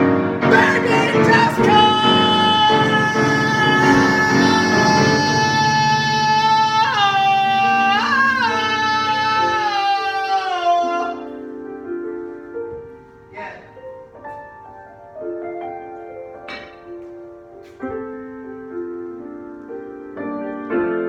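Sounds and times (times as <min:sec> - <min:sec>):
piano chords: 0:00.0 - 0:21.0
person singing long note: 0:00.5 - 0:11.3.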